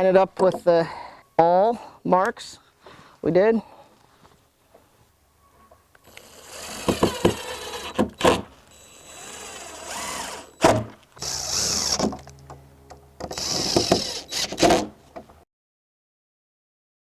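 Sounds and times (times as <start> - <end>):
power drill driving screws: 6.0 - 12.3, 13.2 - 14.9.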